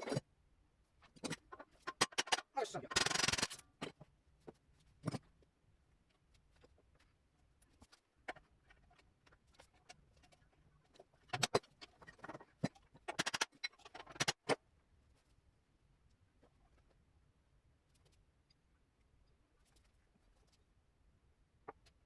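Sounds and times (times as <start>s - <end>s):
tools clicking and knocking: 1.2s - 4.0s, 10.9s - 14.6s.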